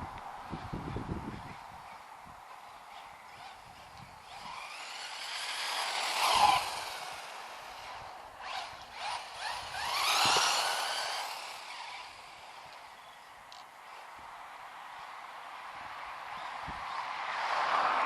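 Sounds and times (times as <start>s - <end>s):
electric rc car motor whine: 0.5s - 13.1s.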